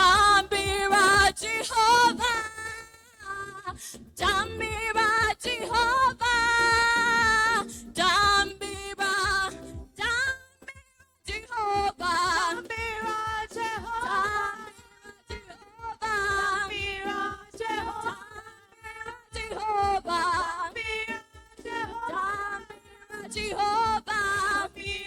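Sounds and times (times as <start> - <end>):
gospel singing over music: 0.0 - 2.9, 11.4 - 25.0
lead voice singing: 0.0 - 10.4, 11.3 - 25.0.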